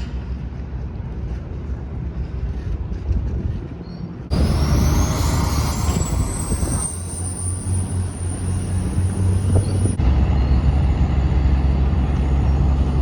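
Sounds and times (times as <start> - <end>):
vehicle rumbling: 0.0 - 13.0
loud rush with high whine: 4.3 - 13.0.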